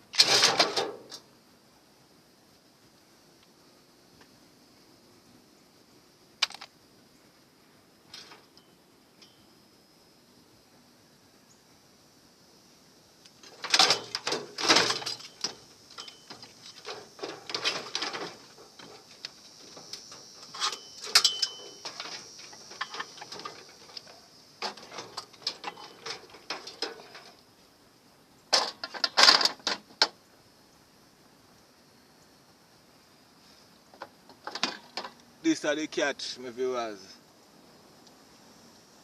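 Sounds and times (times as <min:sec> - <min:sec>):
metal clanking and rattling: 0:00.2 - 0:01.2, 0:13.4 - 0:27.4, 0:28.5 - 0:29.8, 0:34.4 - 0:35.2.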